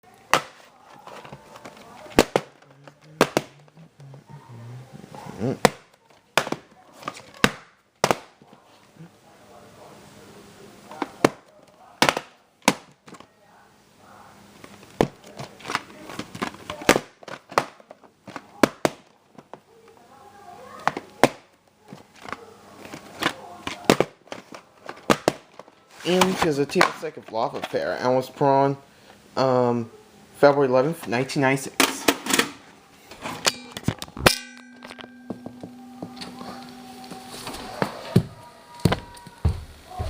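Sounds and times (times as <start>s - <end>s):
tape case clicks and knocks: 1.2s - 3.6s, 22.2s - 27.0s.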